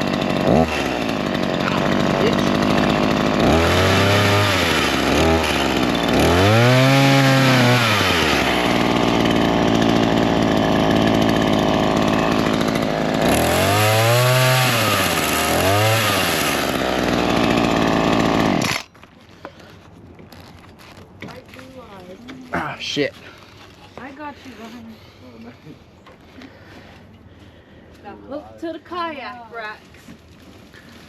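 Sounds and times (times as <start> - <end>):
chainsaw cutting wood: 0.0 - 19.2.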